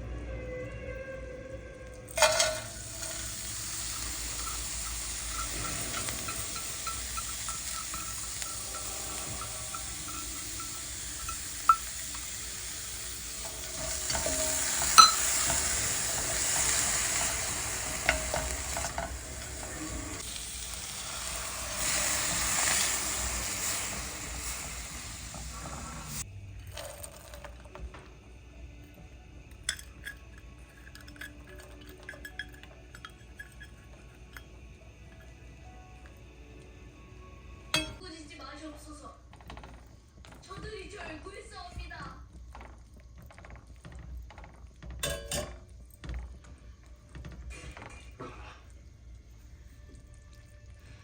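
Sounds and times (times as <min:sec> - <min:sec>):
food sizzling in a pan: 0:02.1 - 0:51.0
utensil tapping pan: 0:02.2 - 0:20.3.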